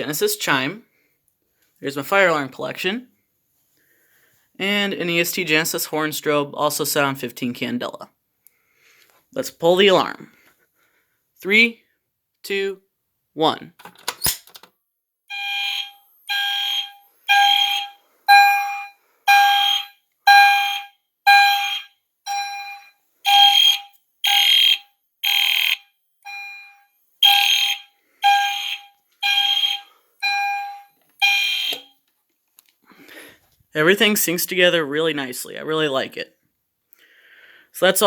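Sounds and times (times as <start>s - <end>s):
fire alarm chime: 15.3s - 32.0s
fire alarm horn blasts: 15.3s - 32.0s.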